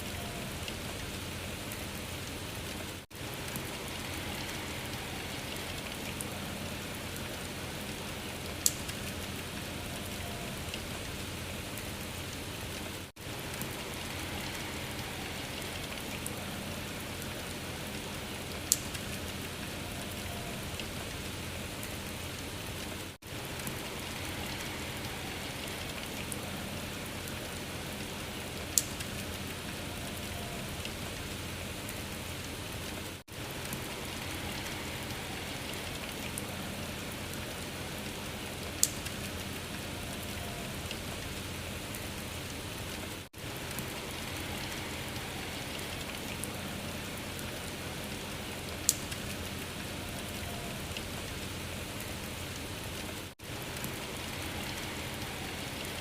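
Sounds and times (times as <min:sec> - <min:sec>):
steady rain hiss: 0:00.0 - 0:56.0
sharp tick: 0:08.6 - 0:09.0, 0:28.8 - 0:29.1, 0:48.9 - 0:49.1.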